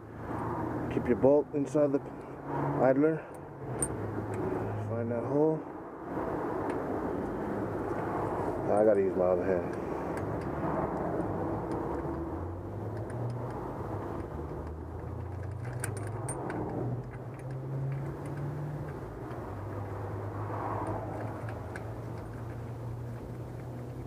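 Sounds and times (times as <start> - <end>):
faint metal clicks: 12.9 - 19.5.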